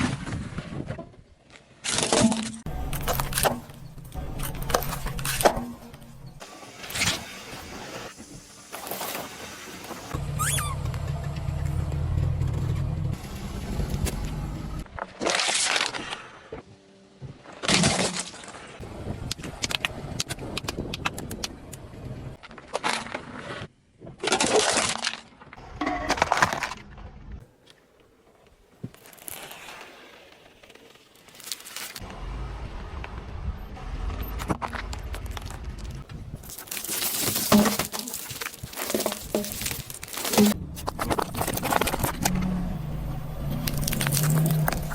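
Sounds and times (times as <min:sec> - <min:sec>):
objects crunching under tyres: 0:00.0 - 0:12.8, 0:13.8 - 0:21.6, 0:22.3 - 0:44.9
car rumble: 0:02.7 - 0:06.5, 0:10.0 - 0:15.0, 0:32.0 - 0:36.7, 0:37.8 - 0:44.9.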